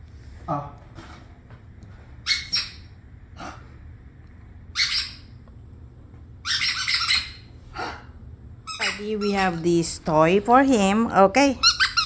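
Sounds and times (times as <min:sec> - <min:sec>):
squeaky dog toy squeaking: 0:02.3 - 0:02.8, 0:04.8 - 0:05.3, 0:06.4 - 0:07.5, 0:08.7 - 0:09.6, 0:11.6 - 0:12.0.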